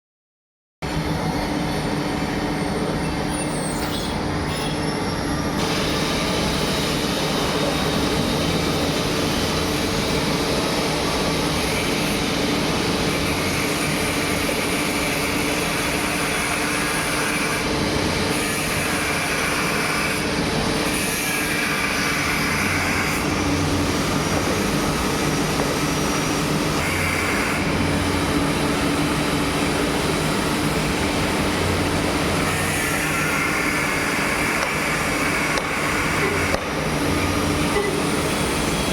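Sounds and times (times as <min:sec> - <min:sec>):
surface grinder running: 0:01.0 - 0:38.9.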